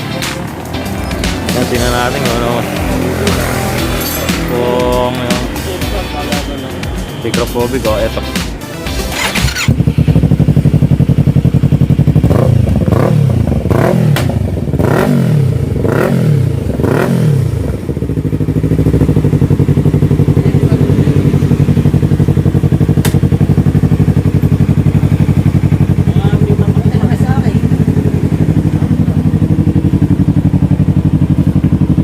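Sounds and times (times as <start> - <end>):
motorcycle engine revving: 0.0 - 32.0
sharp click: 23.0 - 23.2.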